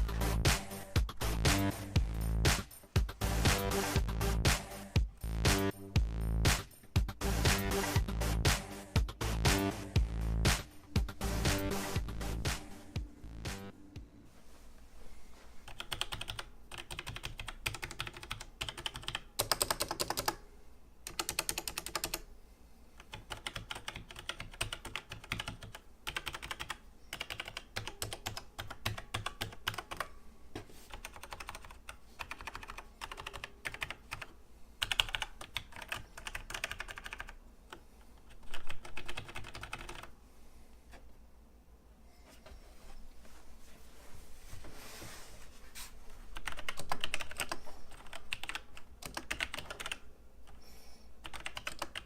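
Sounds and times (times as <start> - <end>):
mechanical keyboard typing: 15.7 - 20.4, 21.1 - 22.3, 23.0 - 30.1, 30.9 - 37.4, 38.3 - 40.1, 46.4 - 50.6, 51.2 - 52.0.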